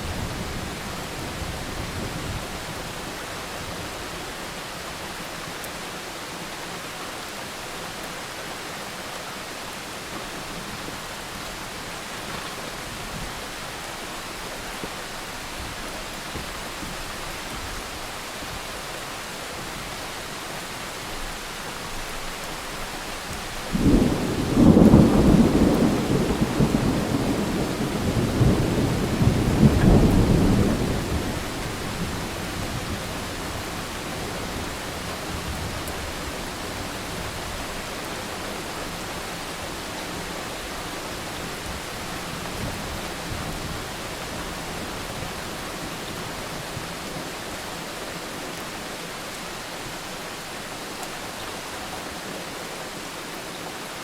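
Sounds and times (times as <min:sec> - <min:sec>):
steady rain: 0:00.0 - 0:54.0
thunder rumbling: 0:23.7 - 0:37.6.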